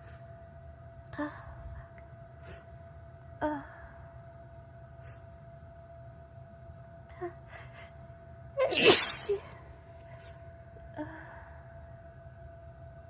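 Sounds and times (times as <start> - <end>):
person sneezing: 8.6 - 9.5.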